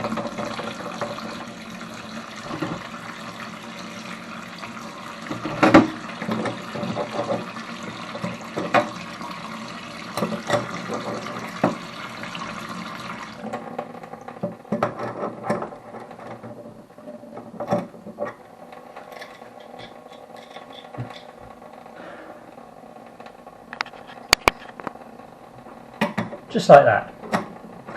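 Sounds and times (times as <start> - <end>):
water running hard from a tap: 0.0 - 14.7.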